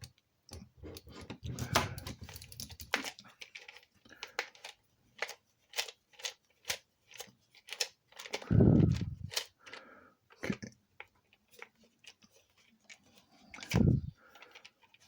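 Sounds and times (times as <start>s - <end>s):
small tools clicking on plastic: 0.0s - 9.8s.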